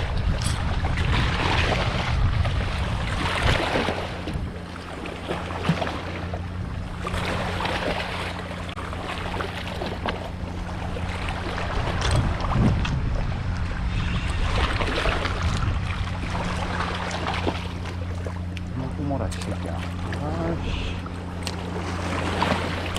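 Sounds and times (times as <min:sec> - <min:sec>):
rushing wind: 0:00.0 - 0:04.7, 0:11.6 - 0:16.8
boat engine humming: 0:00.0 - 0:22.9
water noise: 0:00.0 - 0:22.9.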